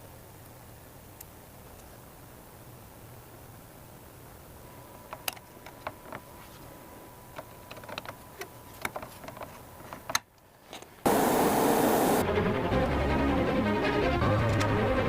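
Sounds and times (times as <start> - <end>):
faint steady whine: 0.0 - 13.6
light clicks and taps: 7.3 - 11.0.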